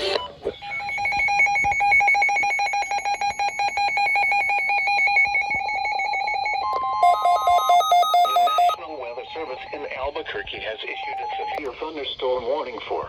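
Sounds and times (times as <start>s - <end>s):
electronic alert tone warbling: 0.6s - 8.8s.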